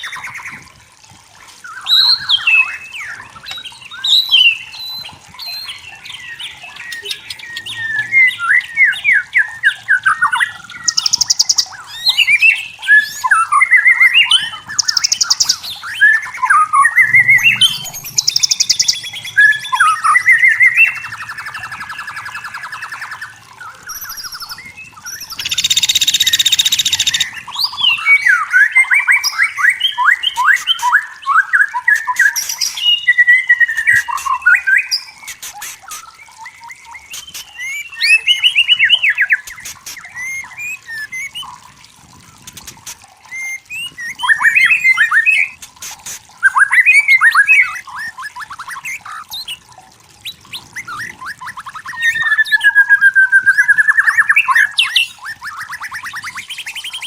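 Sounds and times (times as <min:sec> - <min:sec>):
bird singing whistled phrases: 0:01.7 - 0:41.6, 0:43.3 - 0:45.6, 0:46.4 - 0:49.6, 0:50.2 - 0:57.0.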